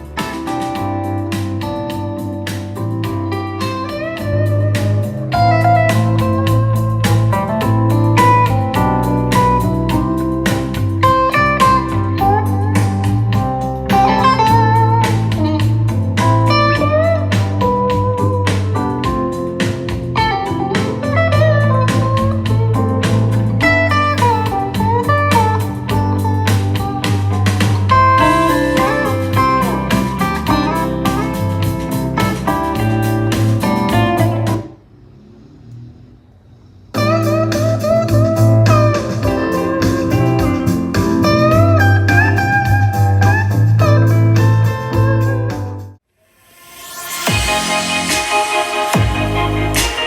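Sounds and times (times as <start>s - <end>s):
blues-rock music over speakers: 0.0s - 34.7s, 37.0s - 46.0s, 46.8s - 50.0s
sliding guitar lines: 0.0s - 45.4s
strong steady bass: 21.2s - 34.7s, 49.0s - 50.0s.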